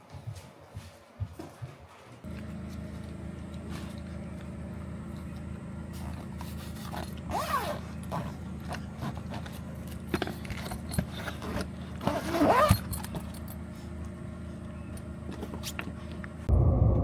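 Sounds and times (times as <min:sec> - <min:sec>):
vehicle engine humming: 0:02.2 - 0:17.0.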